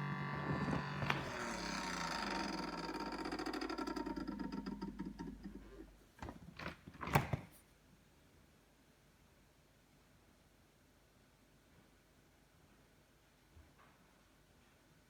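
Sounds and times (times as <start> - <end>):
refrigerator fan rattling: 0.0 - 7.4.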